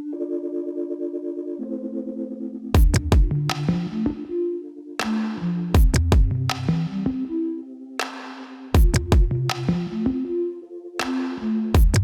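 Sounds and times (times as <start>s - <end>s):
pulsing synthesizer chords: 0.1s - 12.0s
heavy bass and drum hits: 2.8s - 3.4s, 5.8s - 6.6s, 8.8s - 9.4s, 11.8s - 12.0s.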